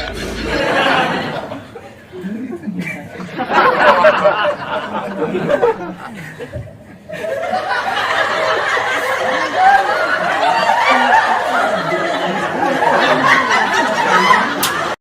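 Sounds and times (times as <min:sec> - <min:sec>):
people talking: 0:00.0 - 0:06.7, 0:08.1 - 0:15.0
people laughing: 0:00.0 - 0:15.0.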